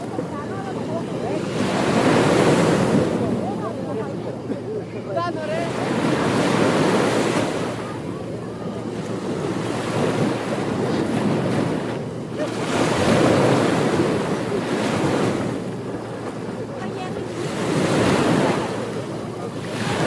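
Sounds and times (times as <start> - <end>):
ocean waves breaking on beach: 0.0 - 20.0.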